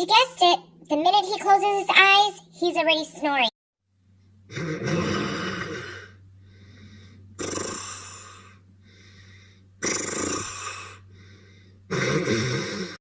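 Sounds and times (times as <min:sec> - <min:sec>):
person snoring: 0:04.5 - 0:06.2, 0:06.8 - 0:11.0, 0:11.9 - 0:13.0
quiet breathing: 0:05.8 - 0:09.8, 0:10.4 - 0:11.9.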